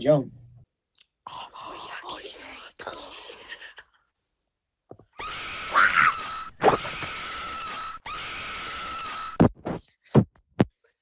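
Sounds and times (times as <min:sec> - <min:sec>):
brief shriek: 0:05.2 - 0:09.4.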